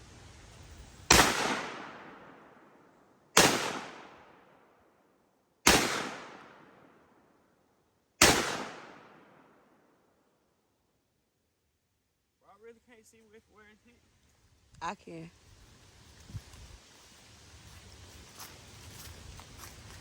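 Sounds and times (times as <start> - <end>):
gunshots: 1.1 - 2.5, 3.4 - 4.4, 5.6 - 6.9, 8.2 - 9.5.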